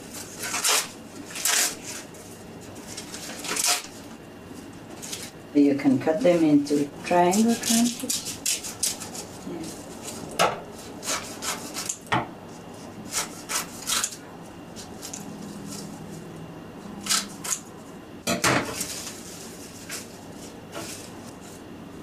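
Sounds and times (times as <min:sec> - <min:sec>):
scissors cutting dry seaweed: 0:07.3 - 0:10.2, 0:11.0 - 0:12.1, 0:13.1 - 0:14.2, 0:17.0 - 0:17.7.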